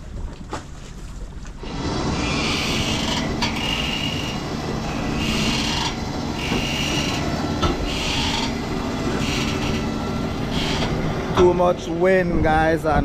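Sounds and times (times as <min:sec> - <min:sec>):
strong wind: 0:10.0 - 0:13.0.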